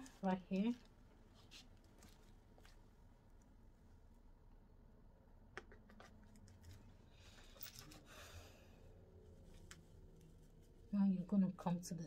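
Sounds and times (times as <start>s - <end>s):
lace and hair rustling: 9.2s - 11.5s.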